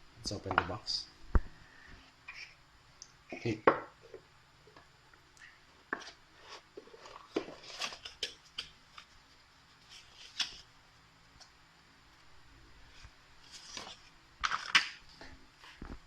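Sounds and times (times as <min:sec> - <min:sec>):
packaging rustling: 0:06.8 - 0:09.2, 0:13.4 - 0:15.8.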